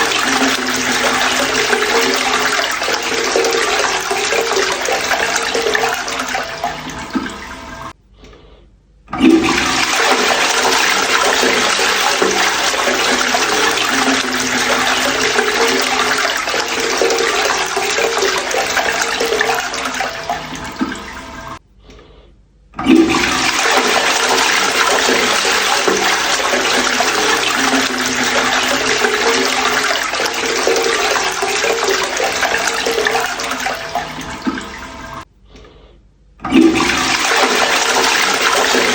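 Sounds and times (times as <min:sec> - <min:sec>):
toilet flushing: 0:00.0 - 0:08.0, 0:09.1 - 0:21.6, 0:22.8 - 0:35.3, 0:36.4 - 0:38.9.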